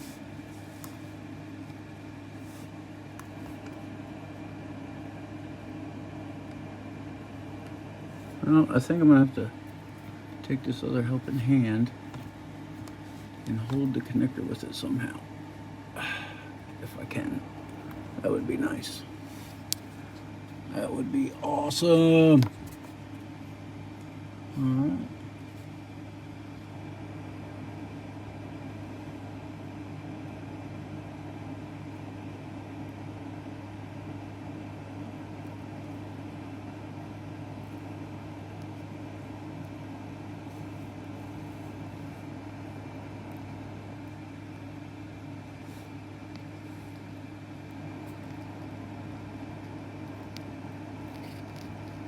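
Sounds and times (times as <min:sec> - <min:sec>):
low hum with high whine: 0:00.0 - 0:52.0.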